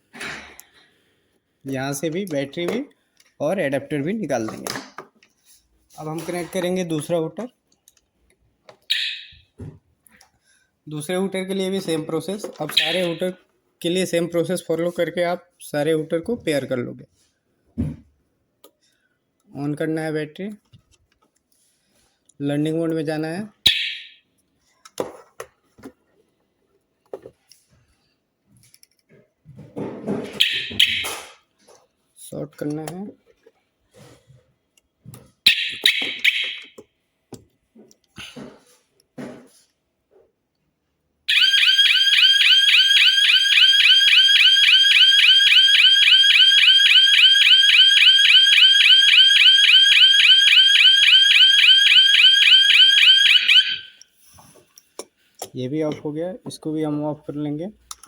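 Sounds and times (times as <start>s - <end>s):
alarm siren rapid warble: 12.8s - 13.2s, 41.3s - 54.0s.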